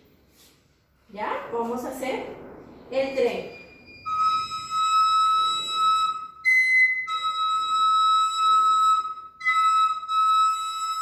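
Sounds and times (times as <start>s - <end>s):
slide whistle notes: 3.4s - 11.0s.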